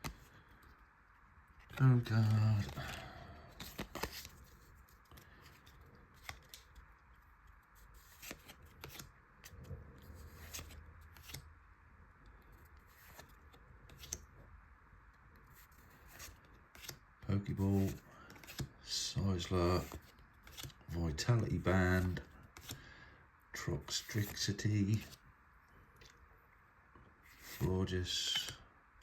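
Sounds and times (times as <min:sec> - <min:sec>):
trading cards clicking and rustling: 0:01.6 - 0:09.6, 0:10.2 - 0:11.4, 0:12.9 - 0:14.2, 0:15.8 - 0:22.8, 0:23.9 - 0:25.2.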